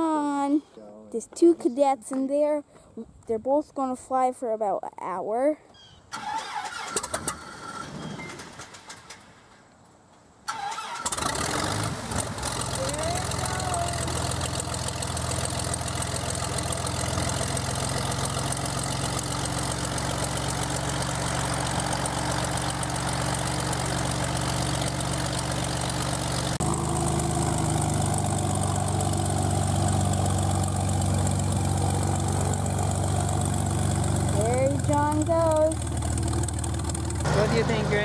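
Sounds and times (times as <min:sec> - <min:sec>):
airplane engine and propeller: 0:11.0 - 0:38.0.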